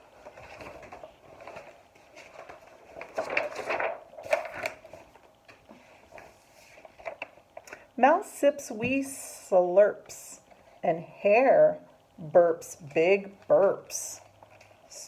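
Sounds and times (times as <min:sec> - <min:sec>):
picture book rustling: 0:00.0 - 0:07.7, 0:14.2 - 0:15.0.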